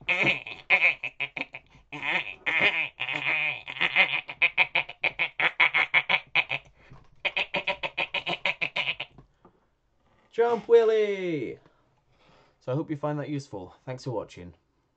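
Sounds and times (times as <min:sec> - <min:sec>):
man imitating dolphin squeals: 0:00.0 - 0:09.1.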